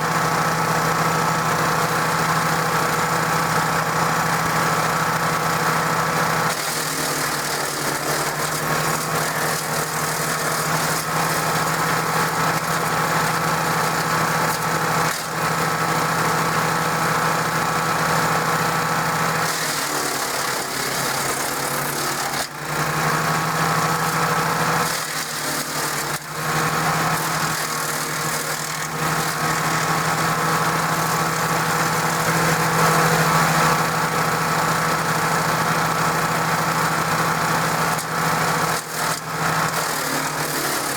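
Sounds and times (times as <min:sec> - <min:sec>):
wood chipper engine running: 0:00.0 - 0:40.9.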